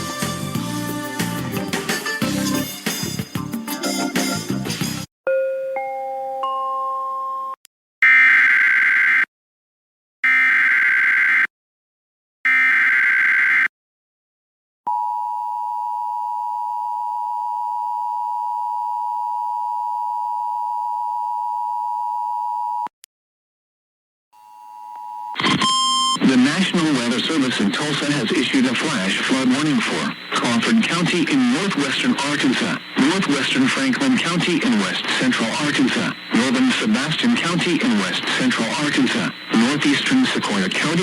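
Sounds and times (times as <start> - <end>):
two-tone alert signal: 24.8 - 26.3
buzzing data bursts: 25.4 - 41.0.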